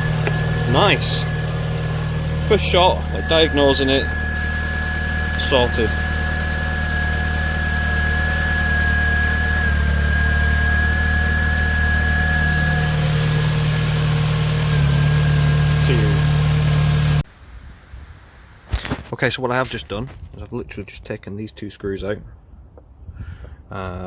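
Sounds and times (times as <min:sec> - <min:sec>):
car engine idling: 0:00.0 - 0:17.2.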